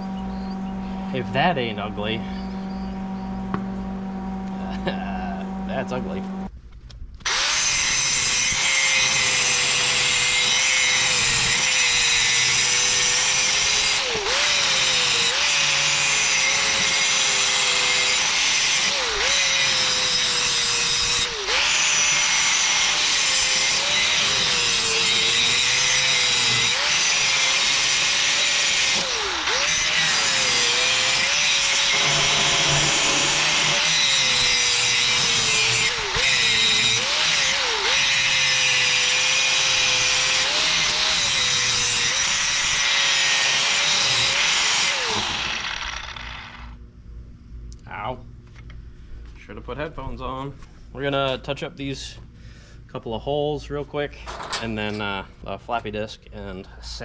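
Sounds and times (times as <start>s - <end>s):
angle grinder grinding metal: 7.3s - 46.8s.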